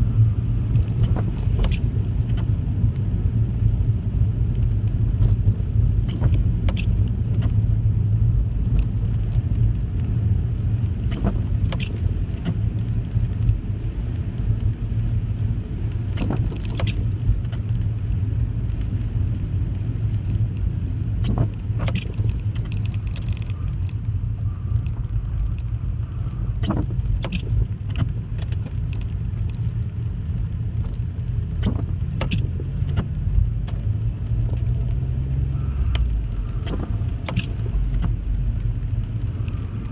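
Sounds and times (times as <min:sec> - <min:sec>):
car engine and road rumble: 0:00.0 - 0:39.9
sharp clicks and rattles: 0:26.6 - 0:34.9, 0:35.9 - 0:38.2.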